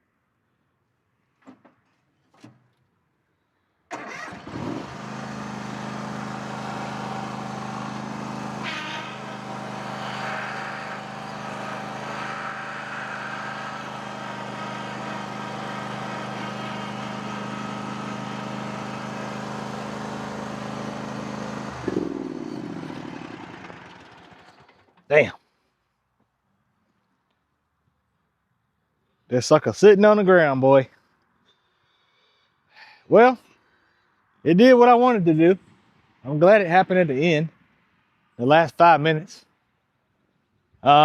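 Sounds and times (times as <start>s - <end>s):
lawnmower engine running: 3.9s - 25.1s.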